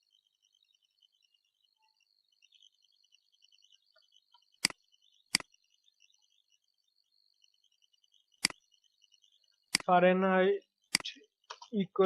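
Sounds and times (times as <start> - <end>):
computer clicks: 3.7 - 6.1, 7.4 - 10.0, 10.9 - 11.8.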